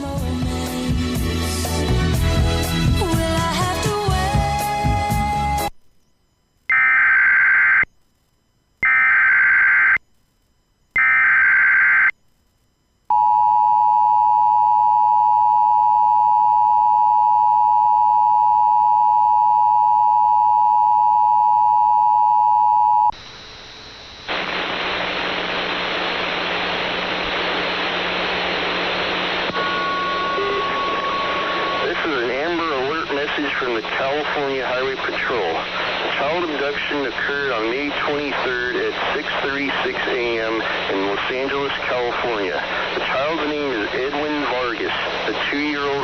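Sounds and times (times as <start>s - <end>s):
static hiss: 0.0s - 13.2s, 23.1s - 46.0s
screeching data tones: 6.7s - 8.0s, 8.8s - 10.1s, 10.9s - 12.4s, 29.5s - 38.6s
two-tone attention signal: 29.5s - 32.0s.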